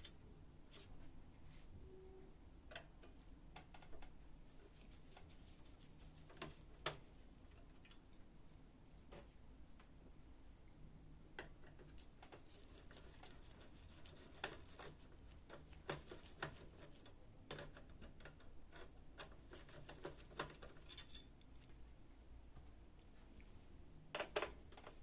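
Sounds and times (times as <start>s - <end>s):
plastic parts clicking and tapping: 15.5s - 21.3s.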